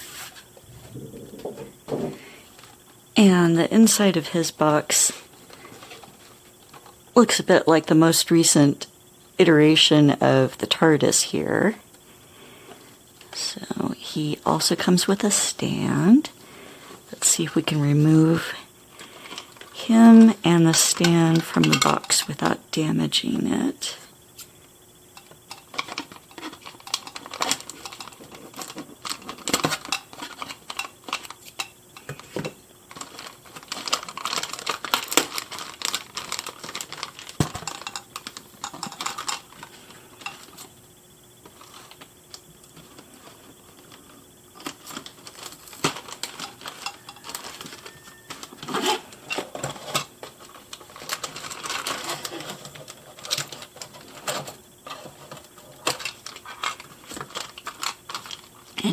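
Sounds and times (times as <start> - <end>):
plastic and cardboard crinkling: 25.5 - 40.7, 41.4 - 58.9.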